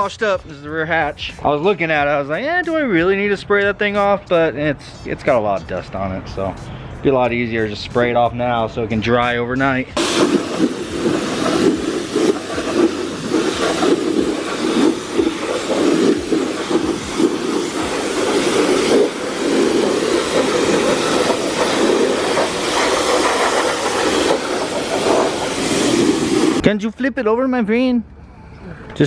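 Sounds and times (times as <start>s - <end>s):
water jet spraying on car panel: 10.0s - 26.6s.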